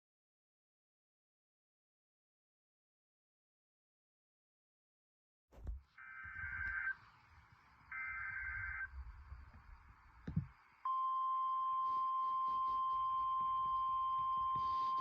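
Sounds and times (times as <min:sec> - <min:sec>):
low radio static: 0:05.6 - 0:15.0
steady warning alarm tone: 0:06.0 - 0:15.0.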